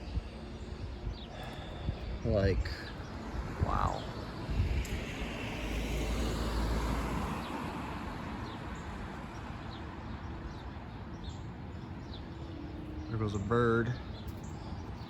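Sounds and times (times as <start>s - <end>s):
gusty wind buffeting microphone: 0.0s - 8.8s.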